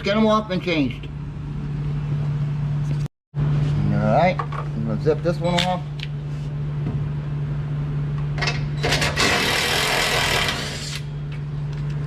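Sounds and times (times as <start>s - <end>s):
steady low hum: 0.0s - 12.0s
power wrench spinning: 8.8s - 11.1s.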